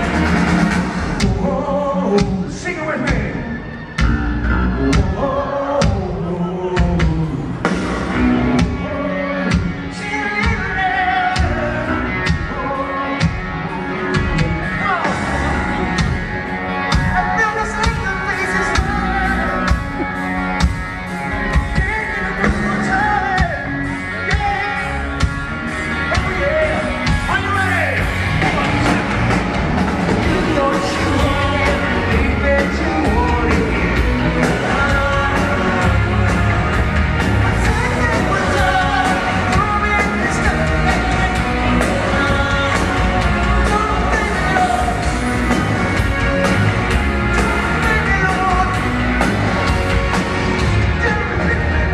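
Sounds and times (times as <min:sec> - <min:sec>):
drums: 0:00.0 - 0:51.9
live hard rock band: 0:00.0 - 0:51.9
person singing and yelling: 0:30.2 - 0:50.2.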